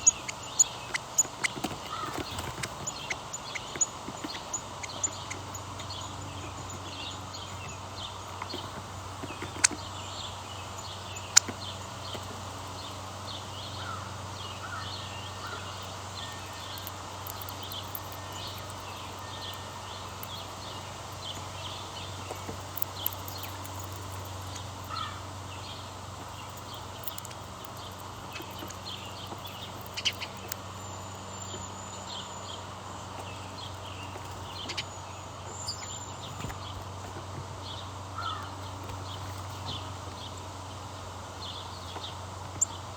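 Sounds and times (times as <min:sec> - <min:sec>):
small birds chirping: 0:00.0 - 0:42.9
steady low hum: 0:00.0 - 0:42.9
sharp clicks: 0:15.4 - 0:25.0, 0:26.2 - 0:30.8.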